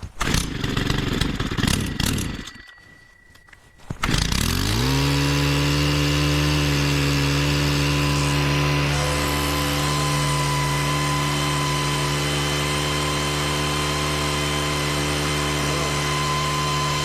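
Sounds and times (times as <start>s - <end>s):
engine sputtering and starting: 0.0s - 12.1s.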